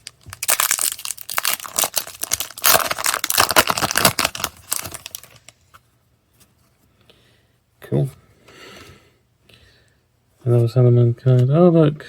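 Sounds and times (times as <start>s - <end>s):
foil wrapper crinkling and tearing: 0.0s - 5.6s.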